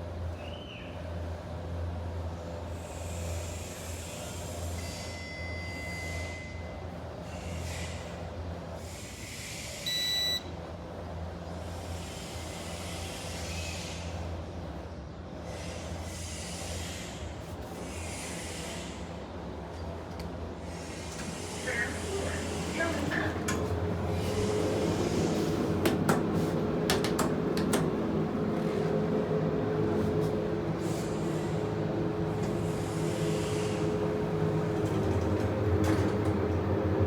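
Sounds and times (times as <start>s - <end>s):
short electronic beep: 9.9s - 10.5s.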